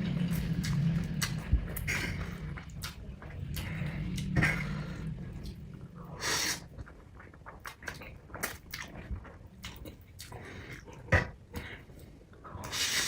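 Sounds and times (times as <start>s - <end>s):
wet chewing with mouth clicks: 0.3s - 13.0s
noodle slurp: 6.1s - 7.0s.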